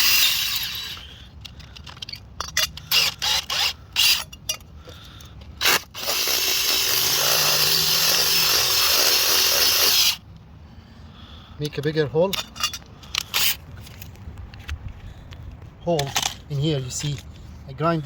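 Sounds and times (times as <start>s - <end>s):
electric drill drilling steel: 0.0s - 1.1s, 5.6s - 10.2s.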